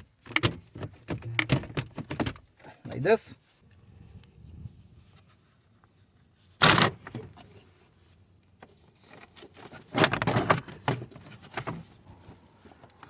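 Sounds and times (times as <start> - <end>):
plastic scraping and clatter: 8.6 - 13.0.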